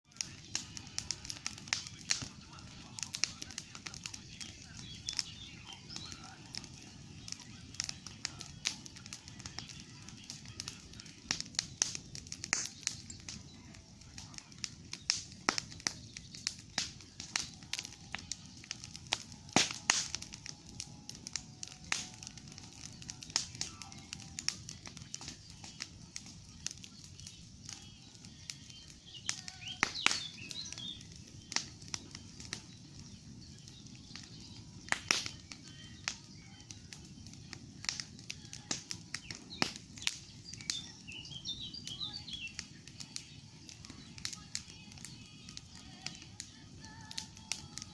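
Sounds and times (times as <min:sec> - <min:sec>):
campfire crackling and popping: 0:00.0 - 0:47.9
faint bird chirps: 0:39.2 - 0:47.9.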